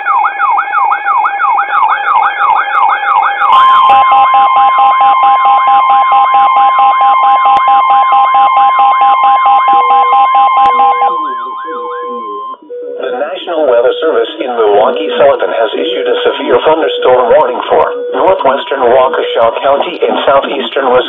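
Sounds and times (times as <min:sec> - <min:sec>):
siren-like sweeping alarm: 0:00.0 - 0:21.0
steady warning alarm tone: 0:00.0 - 0:21.0
fast beeping: 0:09.0 - 0:21.0.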